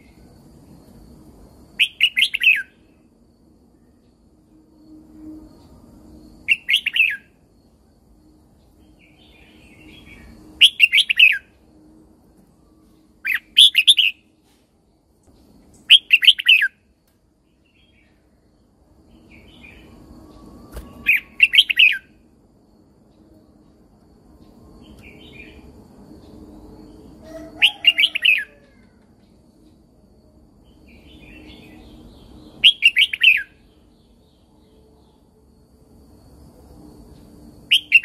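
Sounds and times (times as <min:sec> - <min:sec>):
faint low hum: 0:00.0 - 0:38.0
bird warbling song: 0:30.9 - 0:34.2.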